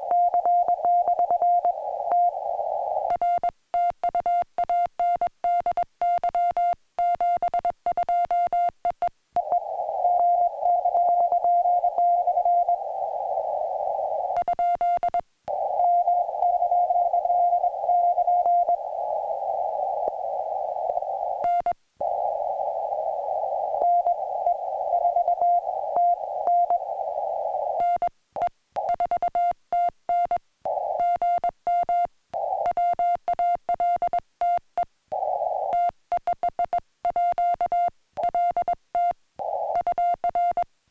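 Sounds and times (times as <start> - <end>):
radio hiss: 0.0 - 3.5, 9.4 - 38.8, 39.4 - 40.7
morse code tone: 35.5 - 40.7.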